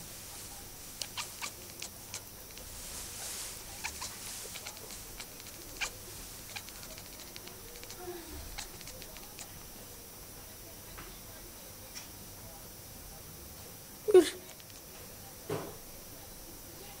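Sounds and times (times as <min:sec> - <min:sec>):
cat chattering clicks: 0:01.0 - 0:02.6, 0:03.8 - 0:09.6, 0:14.5 - 0:14.9.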